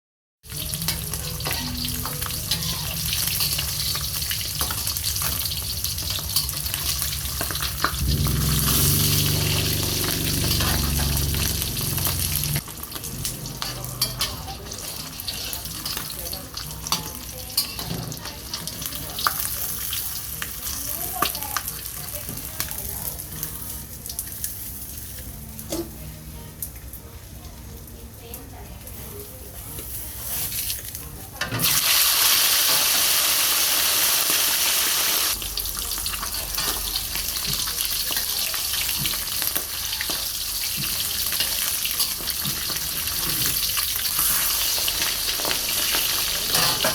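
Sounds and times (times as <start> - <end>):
food sizzling in a pan: 0.4 - 46.9
low hum: 8.0 - 12.6.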